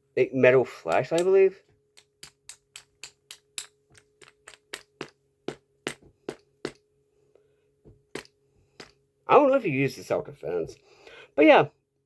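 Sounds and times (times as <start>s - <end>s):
metal flashlight tapping: 2.0s - 5.1s.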